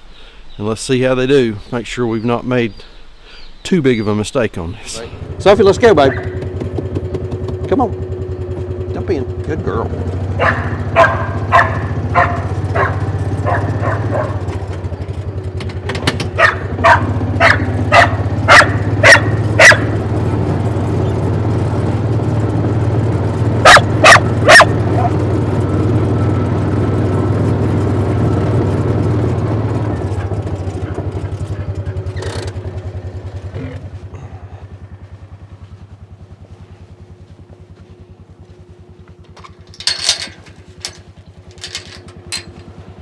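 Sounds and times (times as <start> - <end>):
engine humming: 0.0 - 43.0
dog barking: 6.0 - 6.4, 10.3 - 14.6, 16.3 - 20.2, 23.6 - 25.3.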